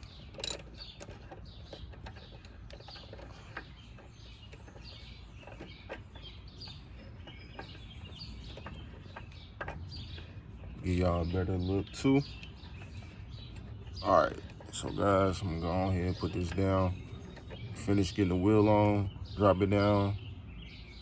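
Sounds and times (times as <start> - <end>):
lug nuts clicking onto wheel: 0.0 - 19.0
faint bird chirps: 0.0 - 21.0.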